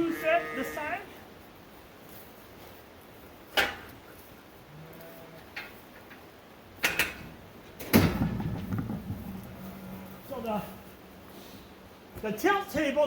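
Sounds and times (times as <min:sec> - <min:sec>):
metal knocks and clanks: 0:06.8 - 0:09.6
metal rattling: 0:06.8 - 0:11.1.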